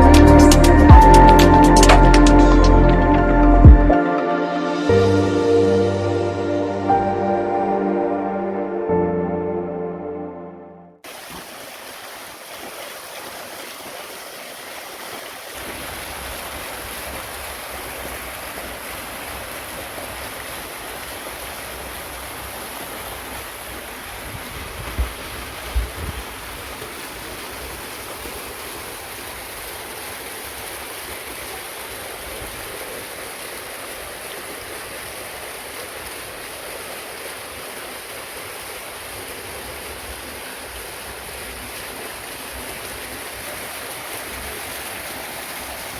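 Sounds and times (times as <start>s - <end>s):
waterfall rushing: 0.0s - 8.6s.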